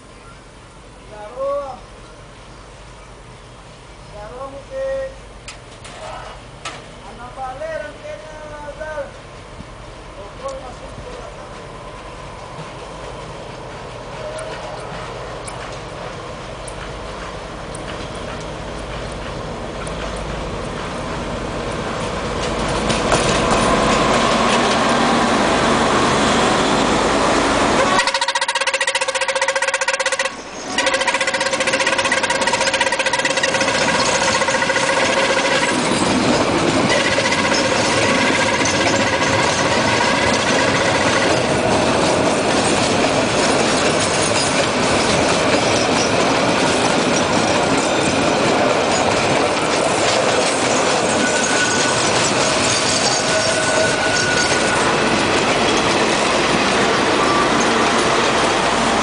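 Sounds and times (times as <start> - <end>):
freight wagons passing: 9.1 - 59.0
diesel engines roaring: 11.6 - 45.6, 46.2 - 59.0
diesel locomotive horn: 27.2 - 35.7, 53.1 - 55.0.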